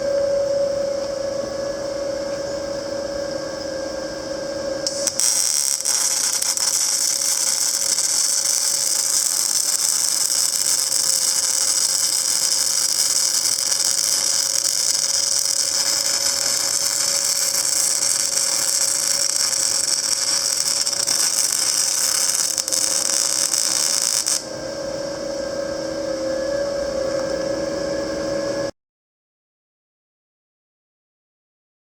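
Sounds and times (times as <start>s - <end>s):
steady machine hum: 0.0s - 28.7s
welding arc hissing: 4.8s - 24.5s.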